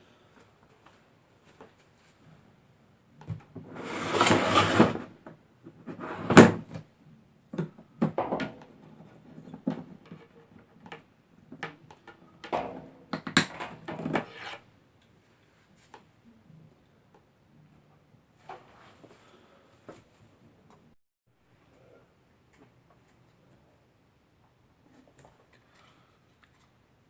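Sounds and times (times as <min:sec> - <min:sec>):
cable rustling drag: 0:03.7 - 0:05.1.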